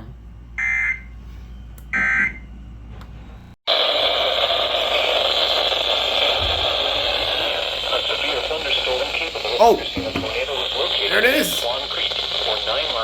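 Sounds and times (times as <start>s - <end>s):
radio static hiss: 3.7s - 13.0s.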